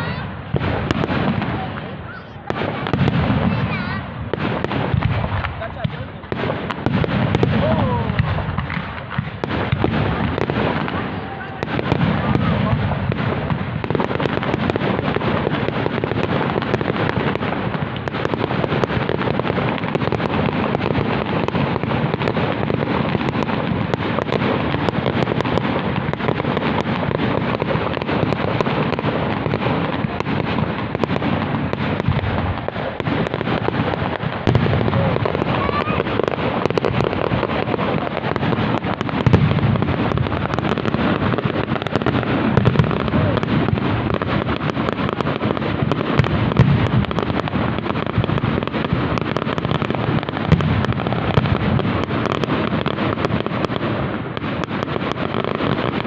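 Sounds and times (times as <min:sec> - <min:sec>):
fireworks bangs and crackling: 0:00.0 - 0:56.0
loud firework bang: 0:00.0 - 0:56.0.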